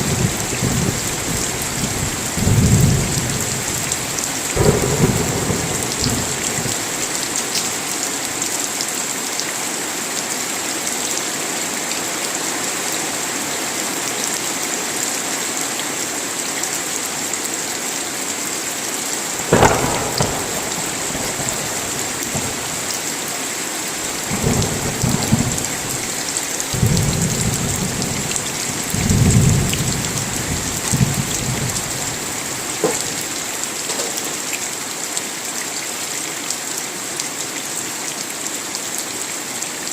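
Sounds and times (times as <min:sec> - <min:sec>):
thunderclap: 0:00.0 - 0:07.3, 0:19.4 - 0:23.2, 0:24.1 - 0:34.4
rolling thunder rumbles: 0:00.0 - 0:07.4, 0:19.4 - 0:23.4, 0:24.0 - 0:34.4
heavy rain: 0:00.0 - 0:39.9.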